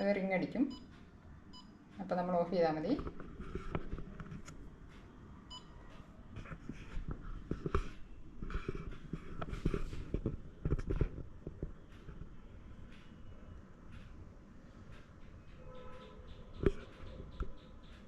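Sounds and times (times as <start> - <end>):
air fryer electronic beep: 5.5 - 5.8
knocks and rustles of handling: 6.3 - 12.4.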